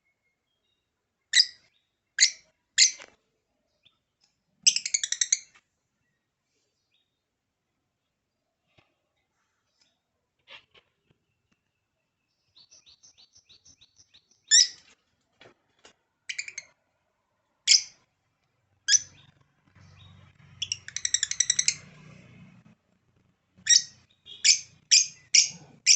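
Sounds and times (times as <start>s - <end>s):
lovebird chirping and calling: 1.3s - 3.0s, 4.6s - 5.6s, 12.6s - 14.9s, 16.3s - 16.8s, 17.6s - 18.0s, 18.9s - 22.0s, 23.6s - 25.9s.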